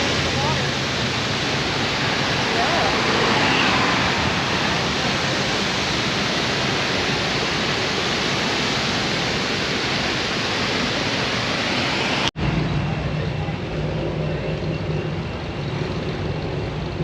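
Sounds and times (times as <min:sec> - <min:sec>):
rushing falling water: 0:00.0 - 0:12.4.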